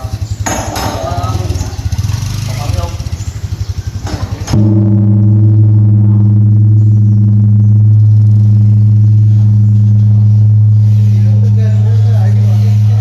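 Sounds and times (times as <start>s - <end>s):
large bell ringing: 4.5s - 13.0s.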